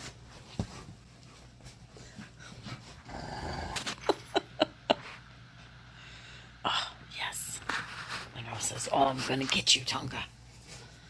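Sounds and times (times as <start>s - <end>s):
dog growling: 3.0s - 4.2s.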